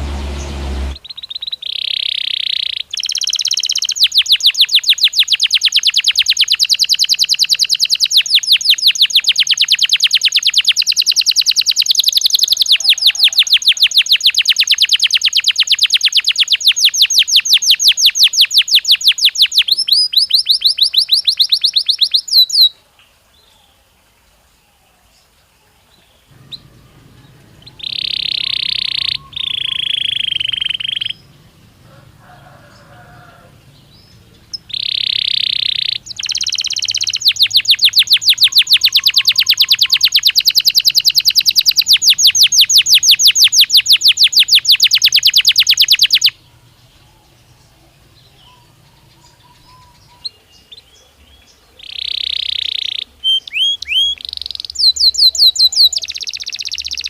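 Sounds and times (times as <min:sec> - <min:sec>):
canary rolling trill: 0:00.0 - 0:22.5, 0:26.3 - 0:46.6
canary whistled notes: 0:26.3 - 0:31.2.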